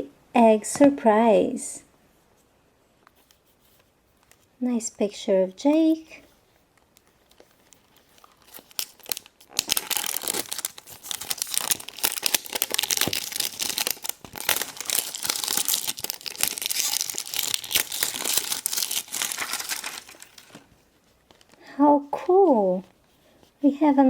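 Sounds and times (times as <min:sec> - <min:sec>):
wrapping crackling as torn: 0:06.6 - 0:21.6.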